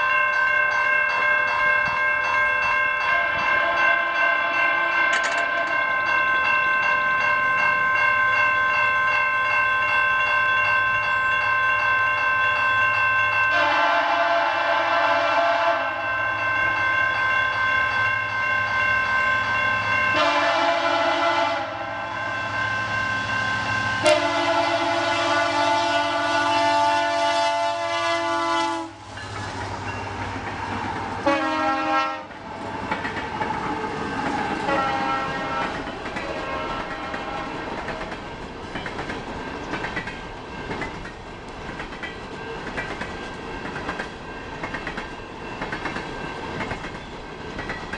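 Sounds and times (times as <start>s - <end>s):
train cars clattering on rails: 1.0s - 8.6s, 29.1s - 47.9s
locomotive air horn blasts: 13.5s - 16.1s, 20.1s - 22.2s, 24.0s - 29.1s, 31.2s - 32.3s, 34.7s - 35.6s, 36.3s - 37.6s.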